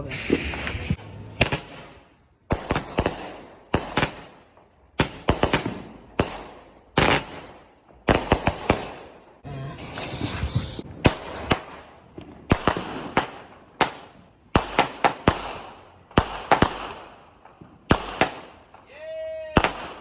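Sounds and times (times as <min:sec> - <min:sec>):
fireworks hissing: 0:00.0 - 0:01.3, 0:09.5 - 0:11.8
fireworks bangs and cracks: 0:00.0 - 0:09.2, 0:09.8 - 0:18.9, 0:19.5 - 0:20.0.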